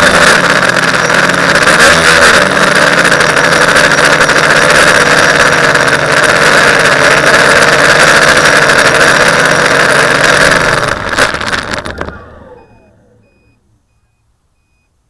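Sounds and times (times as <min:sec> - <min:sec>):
quadcopter motors and propellers: 0:00.0 - 0:14.2
faint repeating beep: 0:12.0 - 0:15.0.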